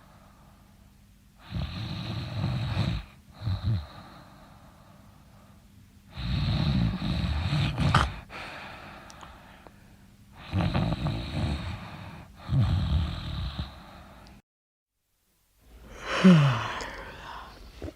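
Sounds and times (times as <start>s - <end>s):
loud rattling snores: 1.4s - 4.0s, 6.1s - 8.3s, 10.4s - 13.8s.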